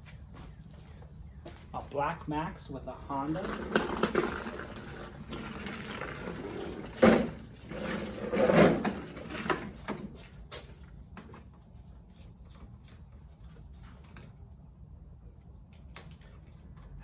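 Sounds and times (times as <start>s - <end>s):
lawn mower knocks and clatter: 3.2s - 10.3s
scraping clunk: 3.4s - 10.2s.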